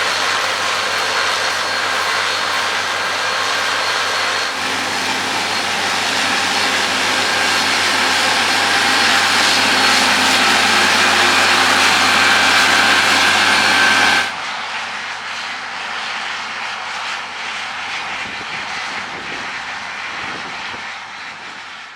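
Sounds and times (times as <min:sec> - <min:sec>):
thin steady whine: 0:00.0 - 0:15.6
combine harvester running: 0:00.0 - 0:21.6.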